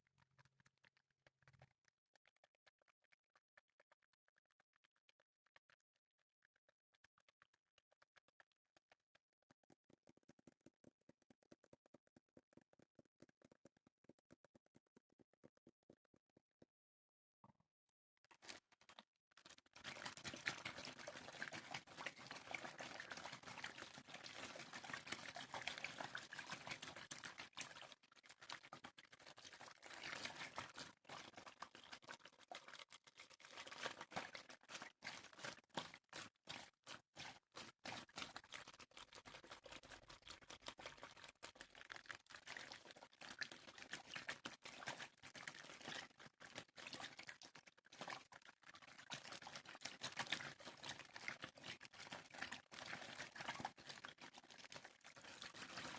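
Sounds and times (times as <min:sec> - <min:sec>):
water pouring and trickling: 0:18.3 - 0:55.9.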